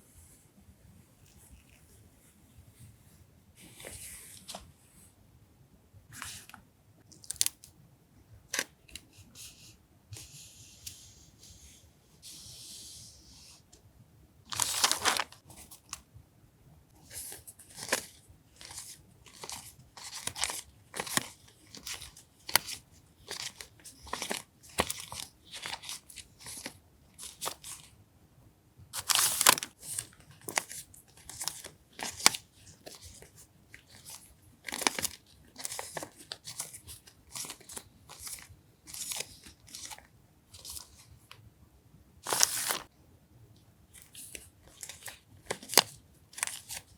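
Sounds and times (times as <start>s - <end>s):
paper packaging rustling: 14.5s - 16.0s, 17.0s - 27.9s, 29.0s - 41.1s, 42.2s - 42.9s, 43.9s - 46.9s.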